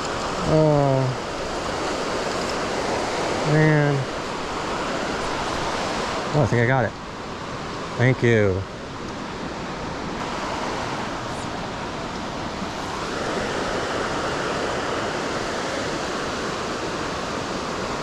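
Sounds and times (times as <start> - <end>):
creek water rushing: 0.0 - 18.0.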